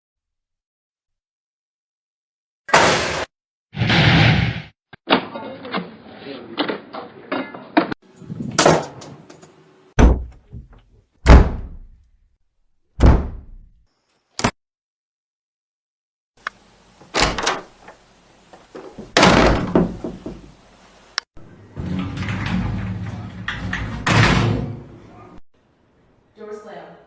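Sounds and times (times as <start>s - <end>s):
door slamming: 10.0s - 12.0s, 13.0s - 13.7s, 17.1s - 17.7s, 18.9s - 20.5s, 21.4s - 25.4s.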